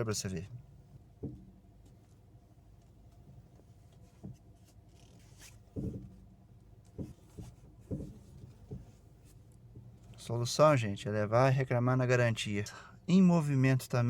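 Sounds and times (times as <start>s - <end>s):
faint steady hum: 0.0s - 14.0s
short knocks: 1.1s - 1.7s, 5.6s - 6.3s, 6.9s - 9.0s.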